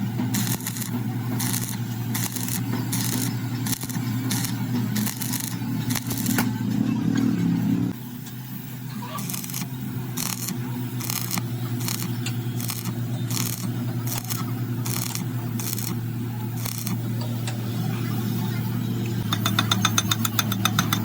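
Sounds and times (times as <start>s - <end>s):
machine hum: 0.0s - 8.6s, 9.2s - 21.0s
metallic scraping: 0.3s - 8.0s.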